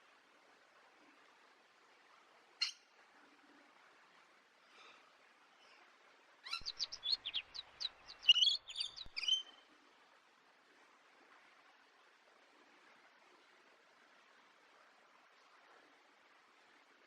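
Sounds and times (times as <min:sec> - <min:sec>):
faint background hiss: 0:00.0 - 0:17.0
bird chirping song: 0:06.4 - 0:09.6.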